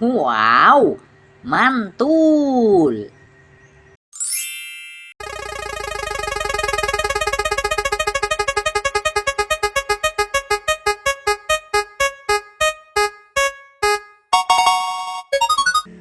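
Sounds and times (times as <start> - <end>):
bright synth chord: 4.5 - 15.9
repeated synth notes: 5.2 - 15.9.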